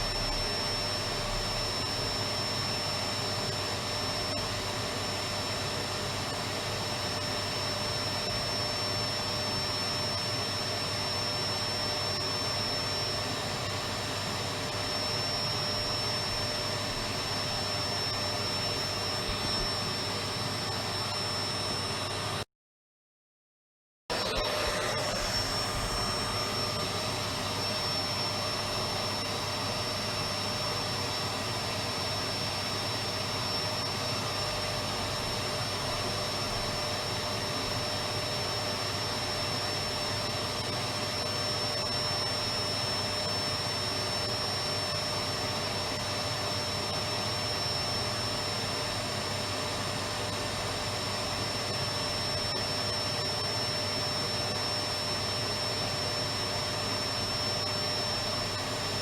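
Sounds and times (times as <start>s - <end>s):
vacuum cleaner running: 0.0s - 22.5s, 24.1s - 59.0s.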